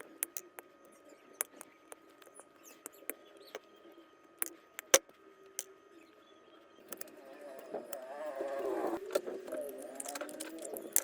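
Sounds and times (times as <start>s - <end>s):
clicks of small plastic parts: 0.0s - 0.7s, 9.1s - 11.0s.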